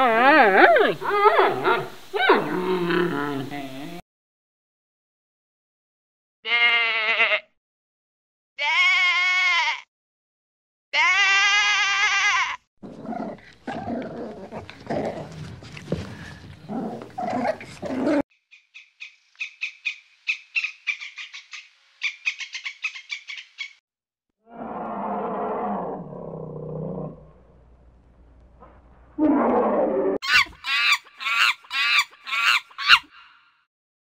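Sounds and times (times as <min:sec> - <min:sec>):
rough growling roar: 0:01.5 - 0:04.0, 0:24.4 - 0:27.6, 0:29.2 - 0:30.2
pitched animal call: 0:08.6 - 0:09.8, 0:29.2 - 0:33.5.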